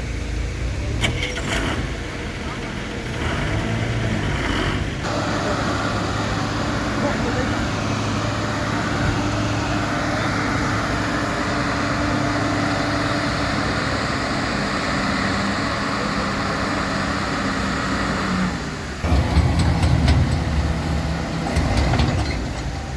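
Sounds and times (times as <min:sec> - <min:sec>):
diesel engine running under load: 0:00.0 - 0:22.9
clanks and rattles: 0:19.0 - 0:22.9.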